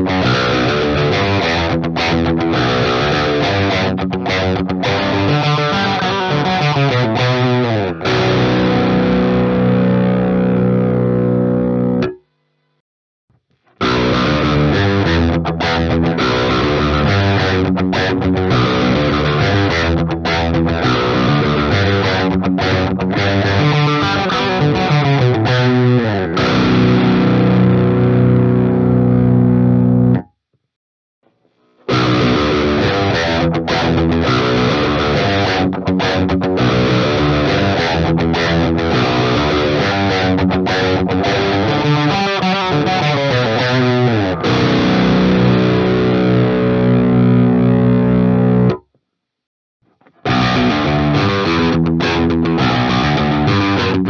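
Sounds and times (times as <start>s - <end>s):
distorted electric guitar riff: 0.0s - 12.8s, 13.6s - 30.3s, 31.7s - 48.9s, 49.9s - 54.0s.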